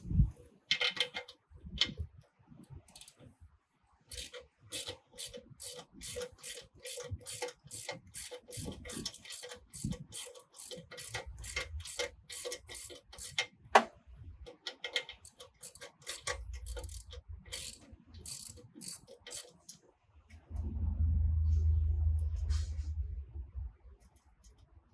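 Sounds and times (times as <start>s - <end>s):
socket ratchet clicking: 4.1s - 13.9s, 14.5s - 19.8s.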